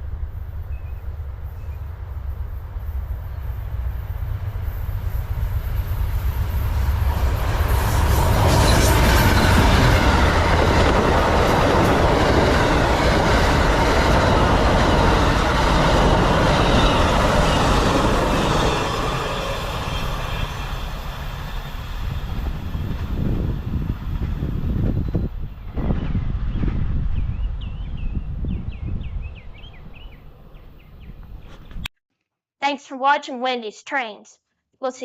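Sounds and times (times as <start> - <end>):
train wheels rumbling on rails: 0.0 - 31.9.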